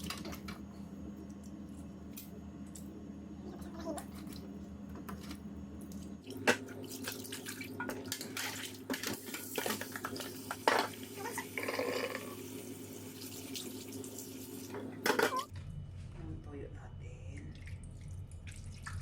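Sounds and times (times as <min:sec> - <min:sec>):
steady low hum: 0:00.0 - 0:19.0
water splashing at a sink: 0:05.2 - 0:15.5, 0:17.4 - 0:19.0.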